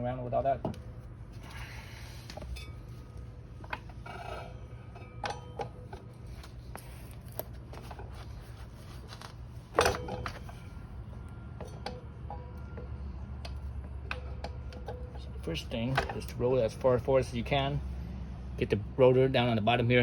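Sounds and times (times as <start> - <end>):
metal parts clinking and knocking: 9.7 - 11.0.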